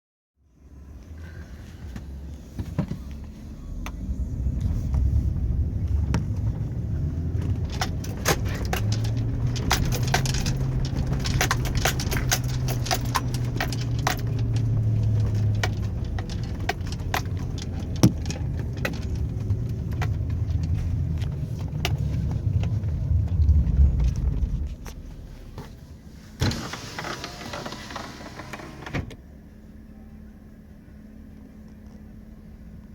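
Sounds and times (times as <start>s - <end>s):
truck engine rumbling under load: 1.2s - 31.3s
truck clicks and rattles: 5.8s - 25.8s.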